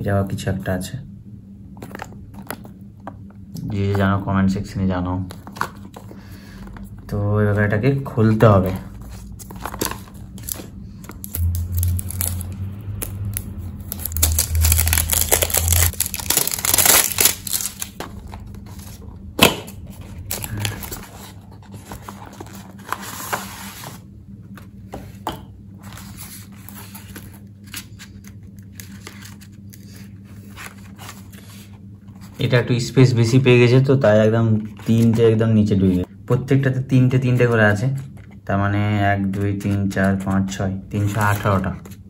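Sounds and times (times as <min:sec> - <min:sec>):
packaging rustling and crinkling: 0:08.7 - 0:12.6, 0:13.8 - 0:19.0.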